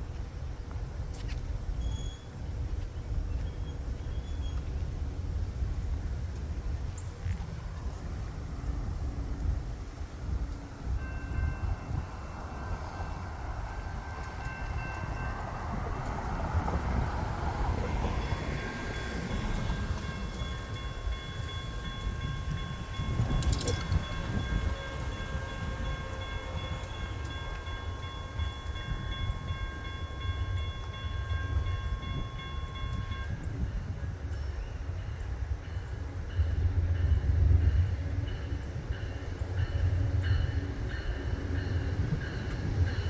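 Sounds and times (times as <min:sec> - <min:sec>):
train rumbling past: 0:00.0 - 0:43.0
train horn chord: 0:19.4 - 0:33.2.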